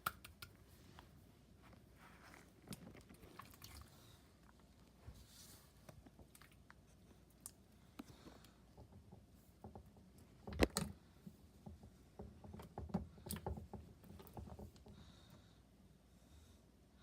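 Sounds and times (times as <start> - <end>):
wet clicks and pops: 0.0 - 0.6.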